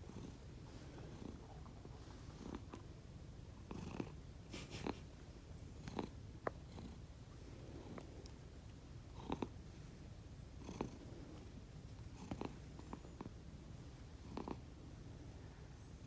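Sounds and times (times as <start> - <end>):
cat snoring: 3.6 - 4.2, 5.7 - 7.0, 9.1 - 9.5, 10.5 - 11.1, 12.1 - 13.3, 14.2 - 14.6.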